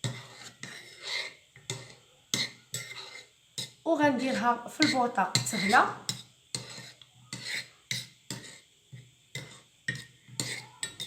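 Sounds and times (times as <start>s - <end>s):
metal spoon clinking against pot: 9.4s - 11.0s.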